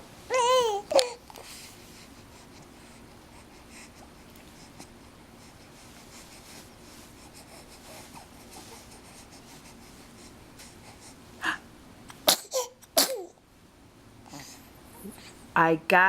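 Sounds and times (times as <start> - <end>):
baby vocalizing softly: 0.3 - 11.6, 12.2 - 13.4
baby sneezing: 12.2 - 13.3.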